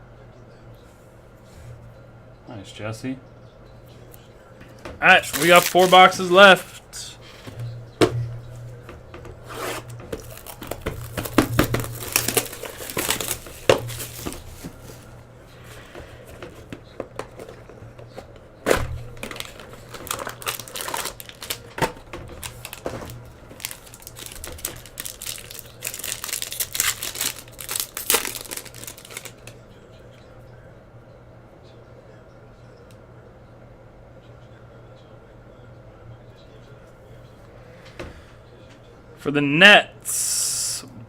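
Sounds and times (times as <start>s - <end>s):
steady low hum: 0.0s - 41.0s
plastic wrapping tearing and crumpling: 5.0s - 6.6s, 9.5s - 15.0s, 19.0s - 29.6s.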